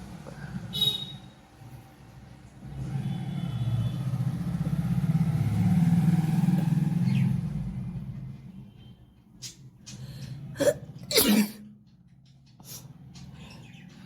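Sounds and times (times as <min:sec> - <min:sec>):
vehicle engine rumble passing: 0:02.2 - 0:08.6.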